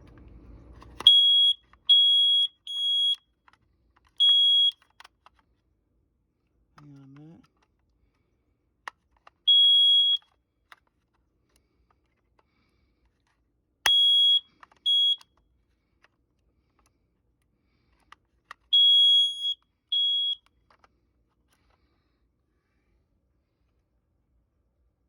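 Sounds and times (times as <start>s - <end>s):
high-pitched alarm beeps: 1.1s - 3.2s, 9.5s - 10.3s, 13.9s - 15.2s, 18.8s - 20.4s
plastic clicks from handling: 2.7s - 5.6s, 8.8s - 13.4s, 14.4s - 15.4s, 17.9s - 18.8s, 20.2s - 21.8s.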